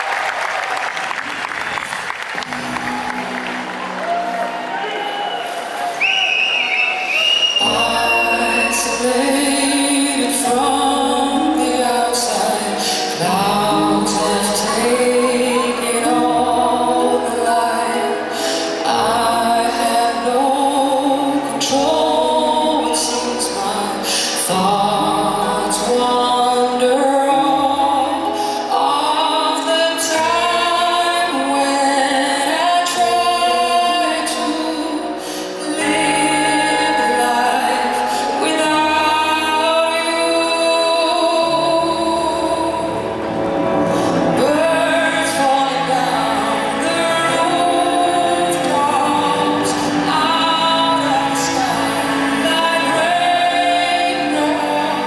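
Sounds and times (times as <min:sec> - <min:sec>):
woman singing slow pop song: 0:07.6 - 0:55.0.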